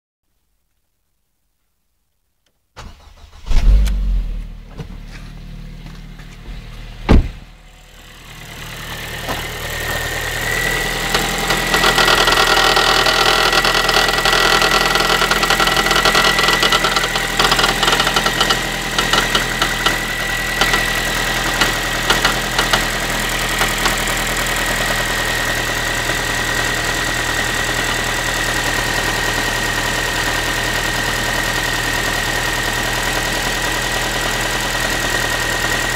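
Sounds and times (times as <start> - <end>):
engine high whine: 2.8 - 30.6
car engine running: 3.2 - 35.9
loud thump: 3.4 - 5.0, 7.0 - 7.5
sharp knock: 7.1 - 7.4.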